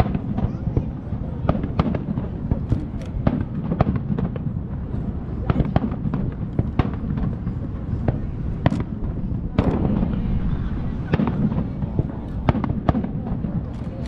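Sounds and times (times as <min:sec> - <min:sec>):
continuous low rumble: 0:00.0 - 0:14.0
fireworks bangs: 0:00.0 - 0:14.0.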